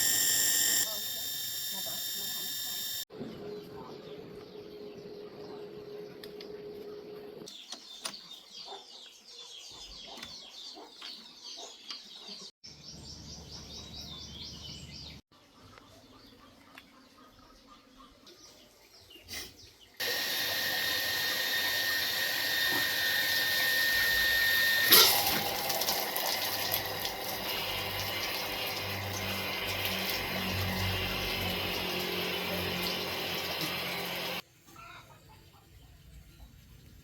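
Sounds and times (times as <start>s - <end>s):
steady high whine: 0.0s - 3.0s.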